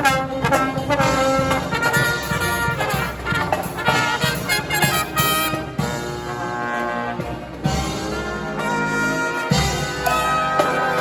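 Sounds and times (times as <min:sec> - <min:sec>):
brass band playing: 0:00.0 - 0:11.0
steady drum beat: 0:00.0 - 0:11.0.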